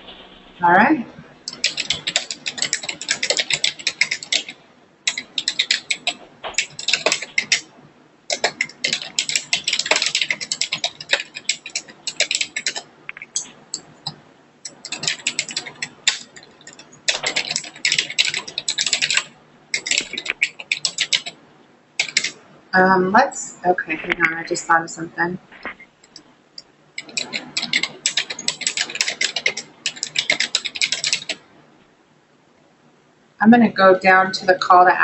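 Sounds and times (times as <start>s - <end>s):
computer keyboard typing: 1.4s - 7.7s, 8.3s - 21.4s, 22.0s - 22.4s, 26.0s - 26.3s, 27.0s - 31.4s.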